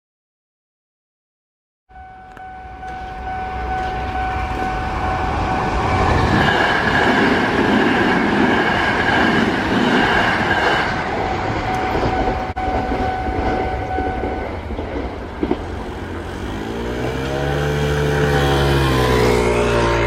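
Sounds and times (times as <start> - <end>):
level crossing warning bell: 1.9 - 7.9, 10.0 - 15.5
train passing: 1.9 - 20.0.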